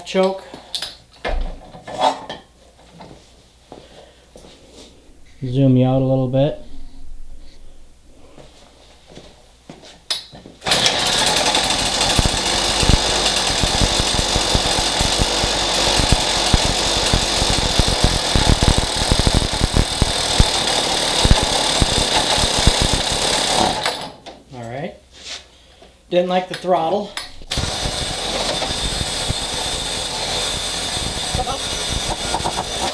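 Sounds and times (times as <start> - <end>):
two-stroke engine running unevenly: 10.7 - 23.9, 27.4 - 32.9.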